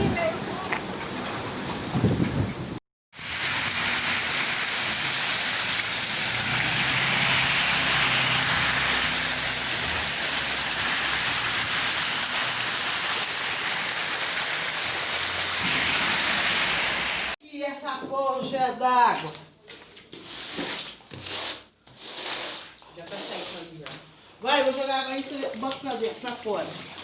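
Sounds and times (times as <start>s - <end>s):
heavy rain pouring: 3.2s - 17.4s.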